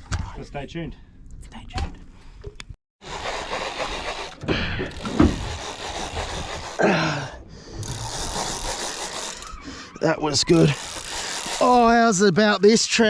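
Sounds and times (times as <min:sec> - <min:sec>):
fishing reel ratcheting whir: 0:03.2 - 0:06.8, 0:07.8 - 0:09.6, 0:10.4 - 0:11.8.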